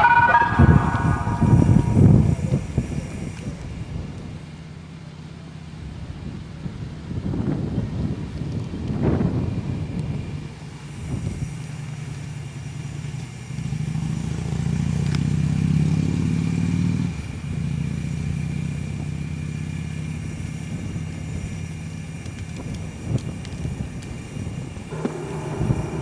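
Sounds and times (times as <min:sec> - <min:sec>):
vehicle engine running: 0:00.0 - 0:06.8, 0:10.2 - 0:26.0.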